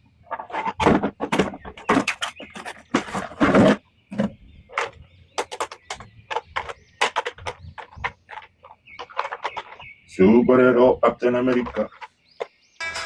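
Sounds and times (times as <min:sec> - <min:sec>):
plastic toys clicking and tapping: 0:00.8 - 0:09.9.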